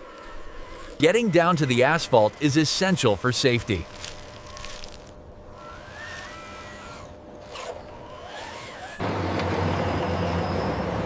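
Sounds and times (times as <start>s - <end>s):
faint gliding whine: 0.0s - 2.6s
truck engine rumble: 0.0s - 11.0s.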